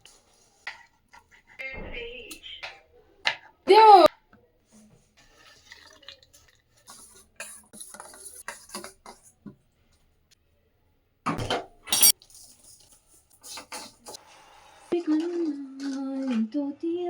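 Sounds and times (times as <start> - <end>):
utensils and dishes clinking: 11.4 - 12.3.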